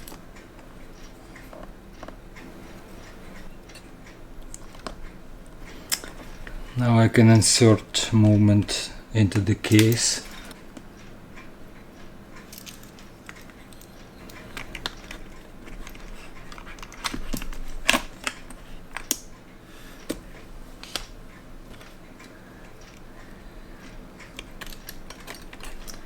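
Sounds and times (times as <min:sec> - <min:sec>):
small clicks of watch parts: 0:12.4 - 0:19.4, 0:23.8 - 0:26.0.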